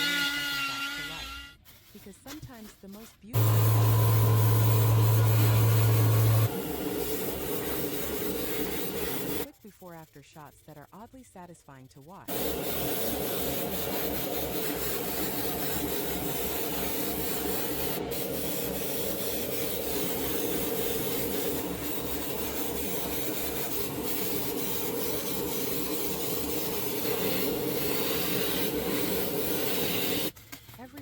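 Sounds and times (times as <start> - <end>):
sanding-like rubbing noise: 0.0 - 30.4
low pulse: 3.4 - 6.9.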